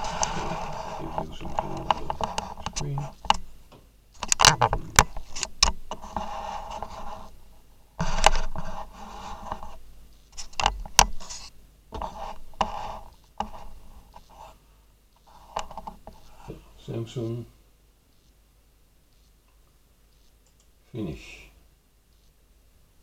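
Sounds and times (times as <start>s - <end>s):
irregular scraping and rubbing: 0.0s - 3.5s, 4.2s - 7.4s, 8.0s - 17.4s
sharp clicks: 20.4s - 20.8s.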